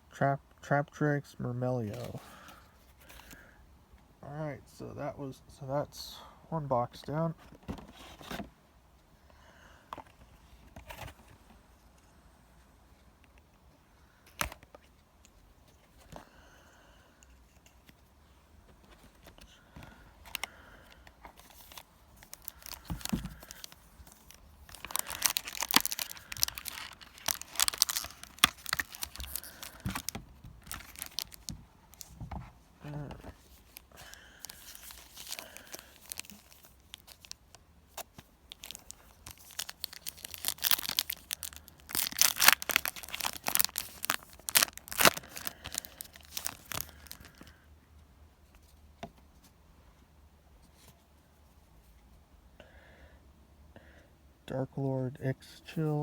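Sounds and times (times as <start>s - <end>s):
wrappers tearing and crinkling: 21.4s - 32.1s, 32.9s - 47.4s.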